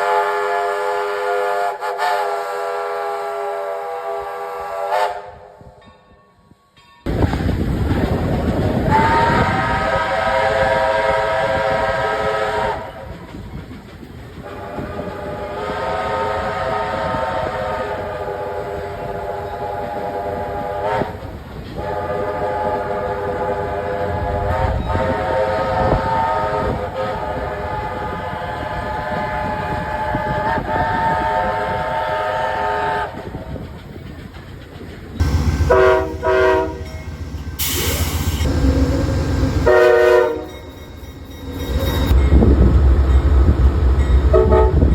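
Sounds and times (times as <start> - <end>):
locomotive air horn blasts: 0.0 - 5.6, 8.9 - 13.0, 14.6 - 21.2, 21.8 - 33.2, 35.2 - 41.0, 44.3 - 44.9
different horn short blasts: 35.2 - 41.9.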